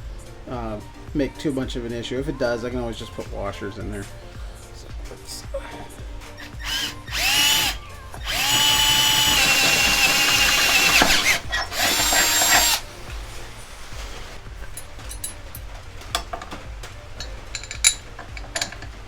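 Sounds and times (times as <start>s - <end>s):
power drill whining: 6.3s - 14.4s.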